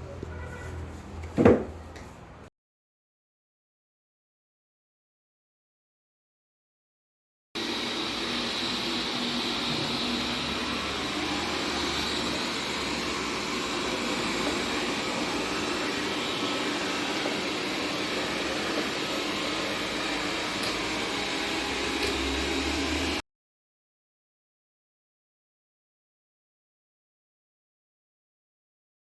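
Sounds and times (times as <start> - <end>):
robot vacuum whirring: 7.6 - 23.2.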